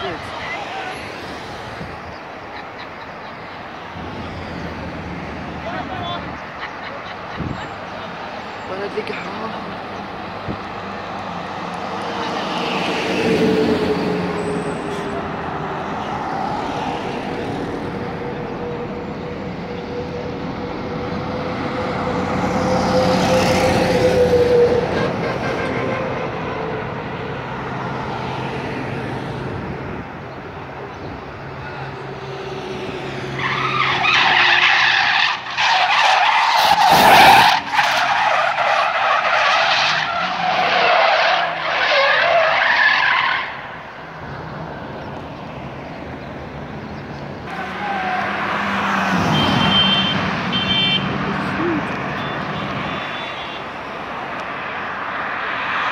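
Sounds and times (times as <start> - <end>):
tyres screeching: 31.6 - 43.8, 47.4 - 53.9.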